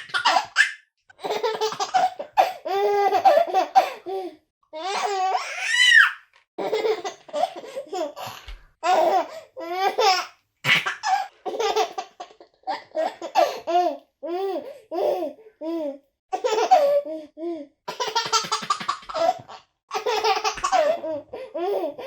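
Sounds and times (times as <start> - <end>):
baby laughing: 0.0 - 4.1, 4.8 - 14.0, 16.4 - 17.0, 17.9 - 22.0.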